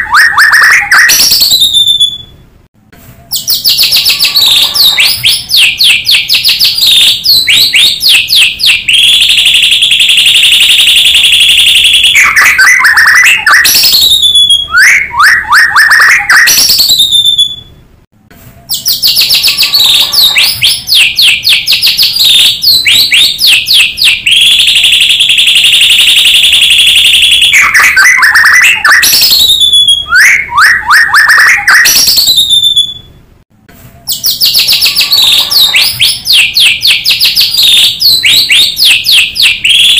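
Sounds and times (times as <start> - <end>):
songbird singing trills and whistles: 0.0 - 2.4, 3.3 - 17.8, 18.6 - 26.1, 26.9 - 33.1, 34.0 - 39.9.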